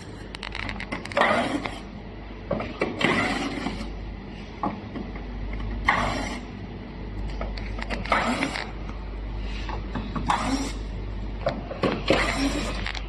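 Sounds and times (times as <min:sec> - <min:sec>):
rasping scraping of device parts: 0:05.9 - 0:06.5, 0:07.8 - 0:08.8, 0:09.5 - 0:10.9, 0:11.8 - 0:13.0.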